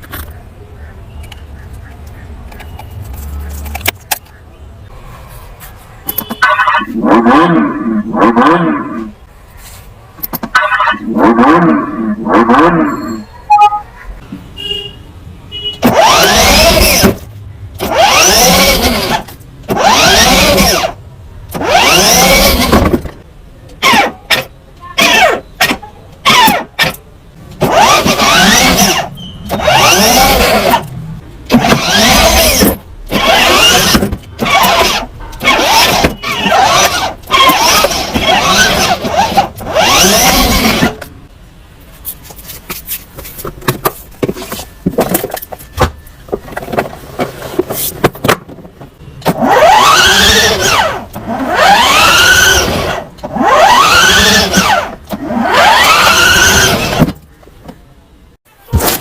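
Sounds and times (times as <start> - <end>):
toy car motor whining: 6.4 - 9.1, 10.5 - 13.8, 15.8 - 23.0, 23.8 - 27.0, 27.6 - 30.9, 31.5 - 41.1, 49.3 - 57.2.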